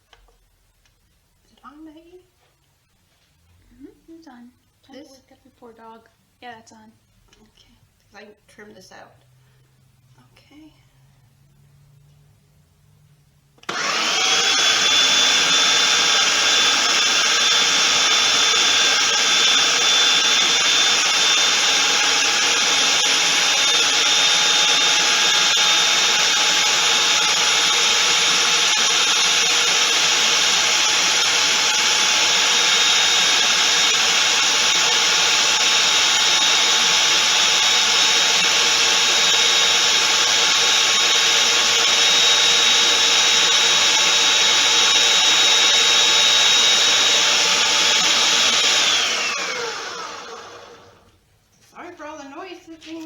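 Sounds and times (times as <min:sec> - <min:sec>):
blender motor whine: 0:13.6 - 0:51.1.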